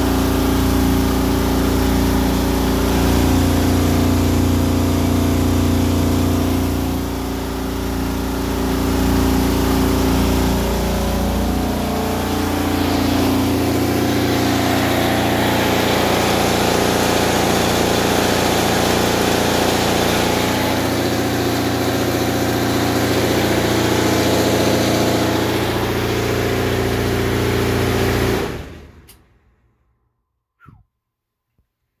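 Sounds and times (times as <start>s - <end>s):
clothes dryer droning: 0.0s - 29.2s.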